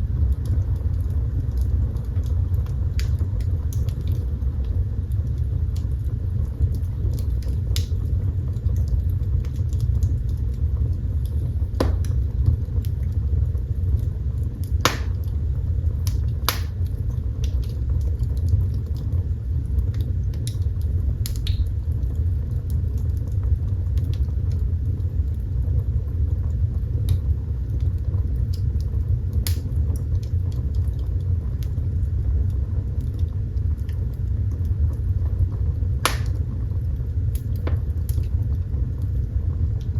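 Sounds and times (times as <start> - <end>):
fire crackling and popping: 0.0 - 39.9
fire rumbling: 0.0 - 39.9.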